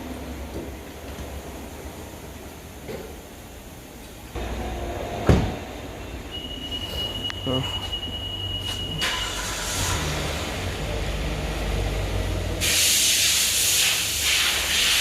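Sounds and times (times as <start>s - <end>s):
loud even hiss: 12.6s - 15.0s.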